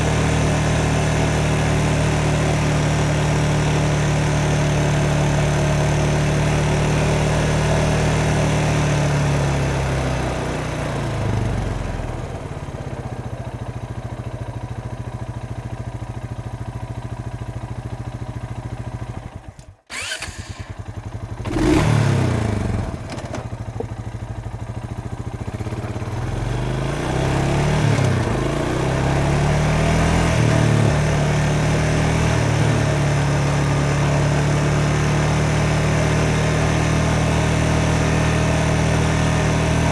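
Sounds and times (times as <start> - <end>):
motorcycle engine idling: 9.0 - 27.6.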